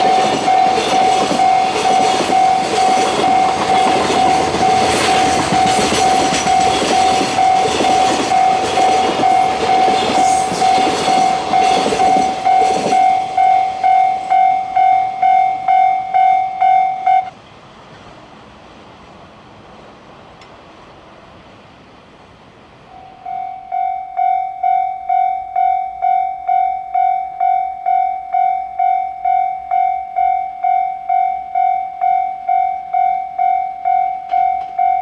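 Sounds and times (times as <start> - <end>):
train wheels clattering: 0.0 - 17.3, 33.7 - 35.0
level crossing warning bell: 0.0 - 17.4, 22.9 - 35.0.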